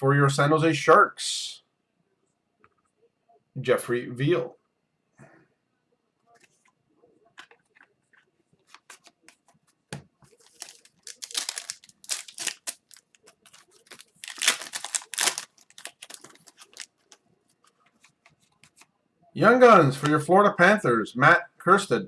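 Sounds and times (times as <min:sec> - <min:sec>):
trading cards shuffling: 0:07.4 - 0:09.6, 0:10.2 - 0:18.9
wrapper crinkling and tearing: 0:10.4 - 0:17.2.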